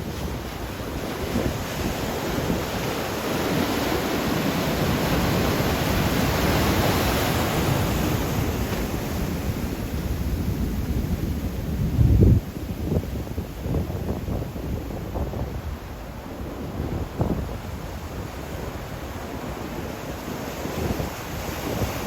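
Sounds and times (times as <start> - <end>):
ocean surf breaking: 0.0 - 13.2
wind buffeting microphone: 0.0 - 22.0.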